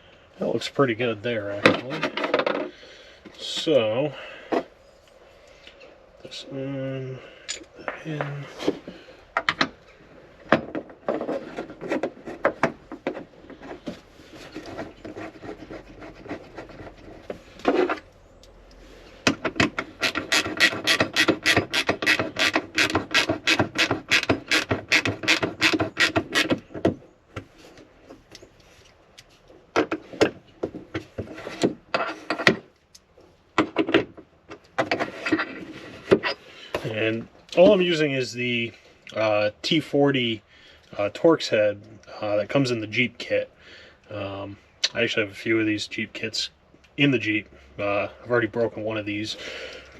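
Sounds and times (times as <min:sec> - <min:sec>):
parts rubbing and scraping: 0:00.4 - 0:05.2, 0:05.8 - 0:38.8.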